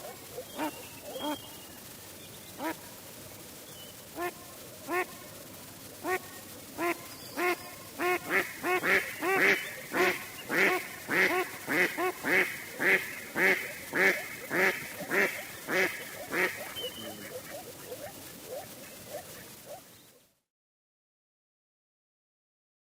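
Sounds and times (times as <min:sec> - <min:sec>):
duck quacking: 0:00.0 - 0:01.4, 0:02.6 - 0:02.9, 0:04.2 - 0:05.2, 0:06.0 - 0:19.8.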